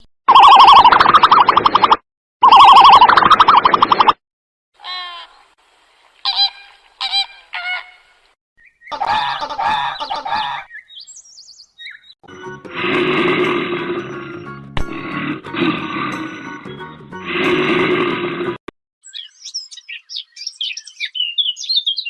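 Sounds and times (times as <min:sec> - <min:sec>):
birds honking: 0:08.9 - 0:11.1.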